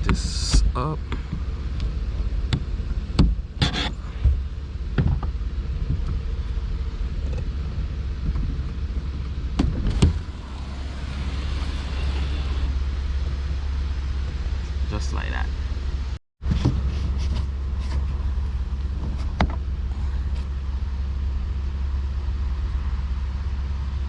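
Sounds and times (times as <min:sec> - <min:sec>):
steady low rumble: 0:00.0 - 0:24.0.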